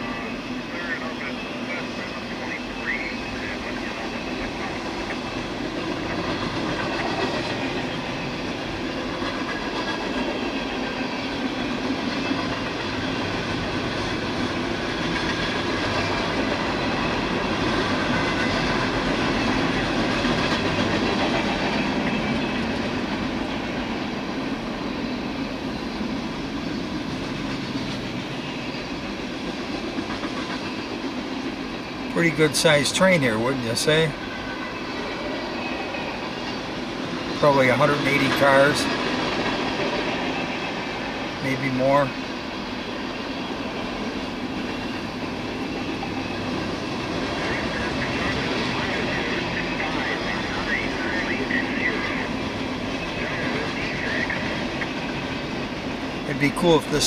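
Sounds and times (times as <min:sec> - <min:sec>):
freight train rolling past: 0:00.0 - 0:57.0.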